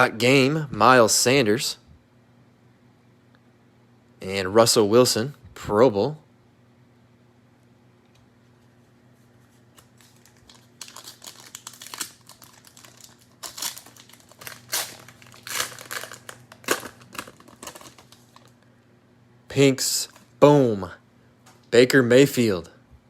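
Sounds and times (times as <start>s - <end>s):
cellophane wrapper crinkling and tearing: 9.7s - 18.6s.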